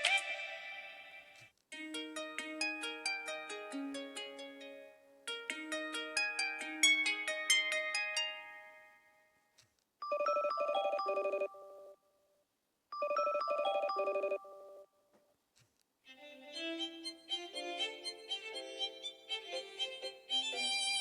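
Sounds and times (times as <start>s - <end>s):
string-like melody: 1.7s - 9.2s, 16.1s - 21.0s
plucked melody: 1.8s - 9.0s
electronic ringtone melody: 10.0s - 12.0s, 13.0s - 14.9s.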